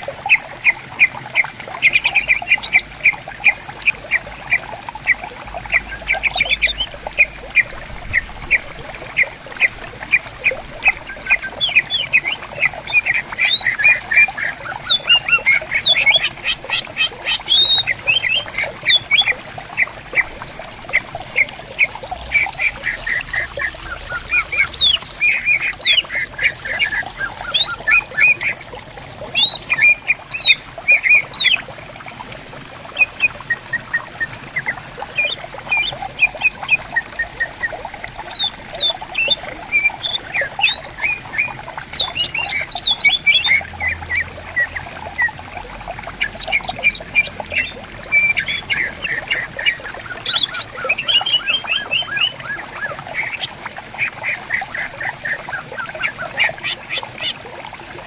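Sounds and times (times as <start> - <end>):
stream trickling: 0.0 - 58.0
bird chirping and whistling: 11.6 - 16.6, 17.3 - 19.3, 22.4 - 28.5, 29.4 - 31.6, 38.4 - 43.6, 50.2 - 52.3.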